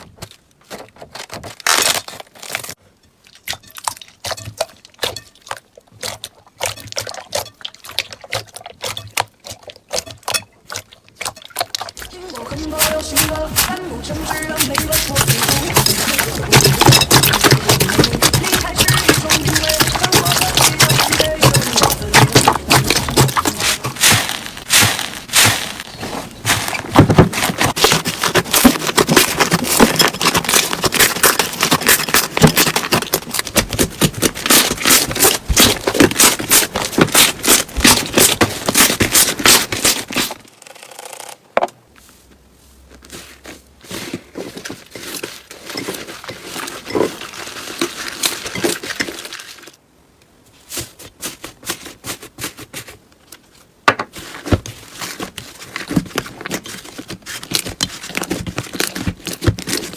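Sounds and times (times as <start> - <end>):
slime crackling and popping: 12.8 - 40.0.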